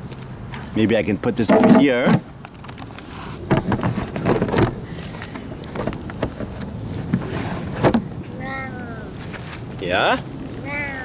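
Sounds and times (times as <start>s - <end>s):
container handling clicks and scrapes: 1.4s - 8.2s.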